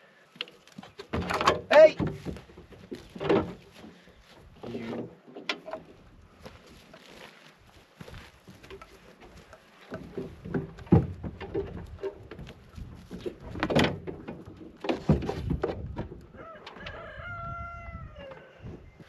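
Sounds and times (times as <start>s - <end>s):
knocks and rattles of handling: 0.4s - 7.4s, 8.1s - 16.8s
rooster crowing: 16.3s - 18.6s.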